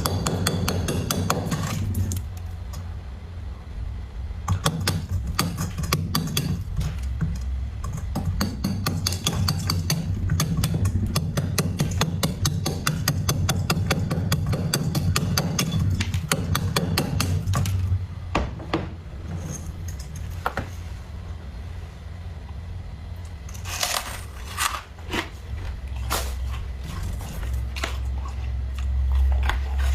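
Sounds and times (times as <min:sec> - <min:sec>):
steady low hum: 0:00.0 - 0:29.9
frost scraping and crunching: 0:23.5 - 0:29.9.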